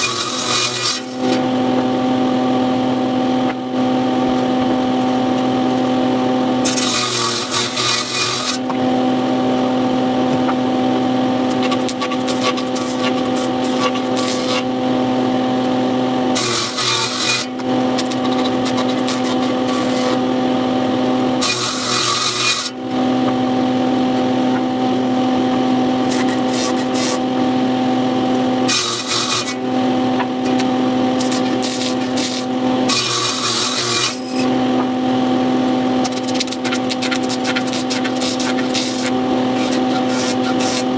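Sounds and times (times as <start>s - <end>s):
harsh scraping cutting noise: 0.0s - 1.9s, 6.6s - 8.9s, 11.4s - 14.8s, 16.3s - 20.3s, 25.4s - 27.4s, 28.6s - 35.0s, 36.0s - 40.9s
woodworking power tool humming: 0.0s - 40.9s.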